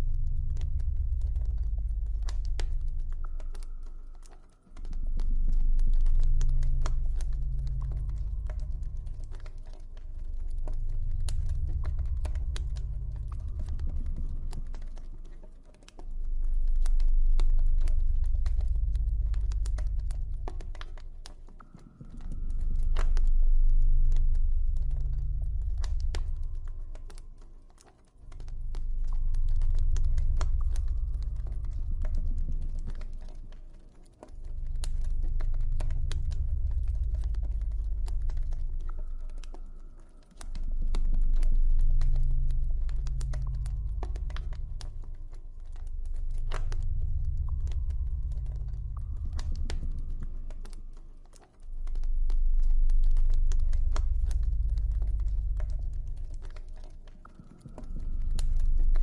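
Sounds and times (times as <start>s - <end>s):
deep ambient drone: 0.0s - 59.0s
campfire crackling and popping: 15.8s - 59.0s.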